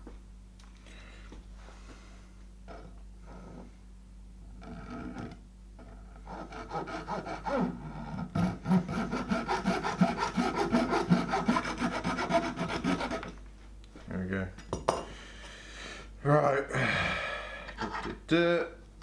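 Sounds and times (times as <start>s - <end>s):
hand saw cutting plastic: 6.2s - 13.4s.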